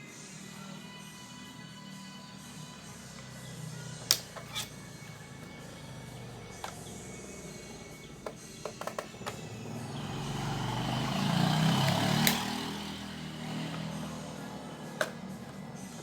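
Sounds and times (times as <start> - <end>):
vehicle engine rumble passing: 4.8 - 16.0
small clicks: 11.8 - 12.7.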